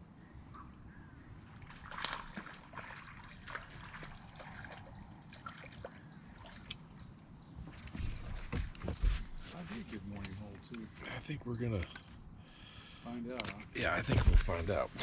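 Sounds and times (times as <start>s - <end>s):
water lapping against boat hull: 1.4s - 10.8s, 12.9s - 15.0s
light splashes and knocks: 1.6s - 6.8s.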